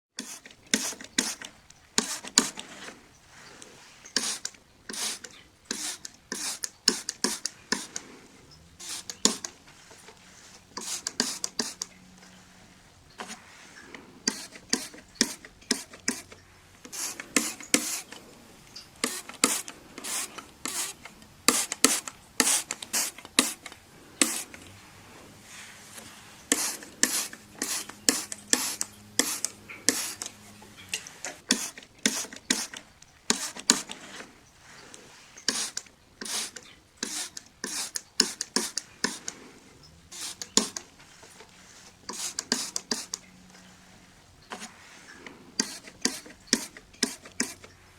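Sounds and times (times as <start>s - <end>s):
spray bottle hissing spurts: 0.2s - 8.2s, 8.8s - 12.4s, 13.1s - 43.4s, 44.4s - 47.7s.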